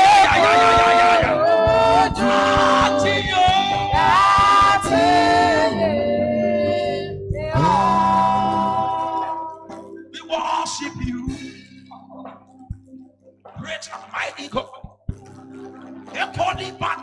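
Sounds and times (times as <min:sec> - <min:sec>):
gospel voices singing: 0:00.0 - 0:12.4.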